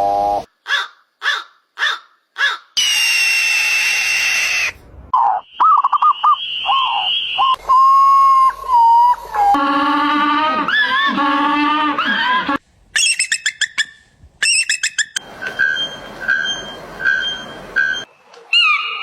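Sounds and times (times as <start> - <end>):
whistle-like tone: 5.4 - 9.6, 14.5 - 18.1
long held animal call: 7.7 - 12.6.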